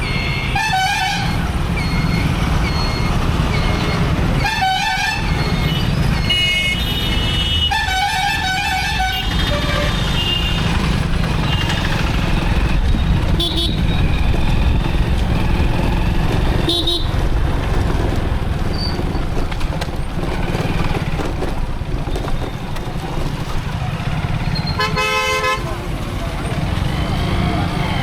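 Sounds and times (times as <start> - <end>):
vehicle horn honking: 4.4 - 10.7, 13.3 - 14.0, 16.7 - 17.1, 24.7 - 25.7
motorcycle engine and wind rumble: 10.6 - 24.8.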